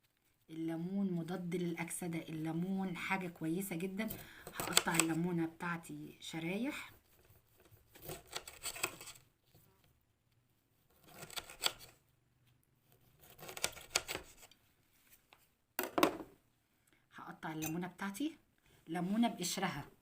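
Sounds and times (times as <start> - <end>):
knife slicing through lemon: 11.0 - 11.9, 13.2 - 14.5.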